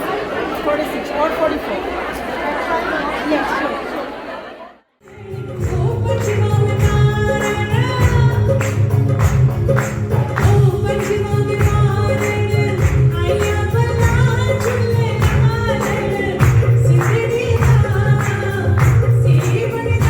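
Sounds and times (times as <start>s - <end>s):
song with percussion and bass: 5.1s - 20.0s.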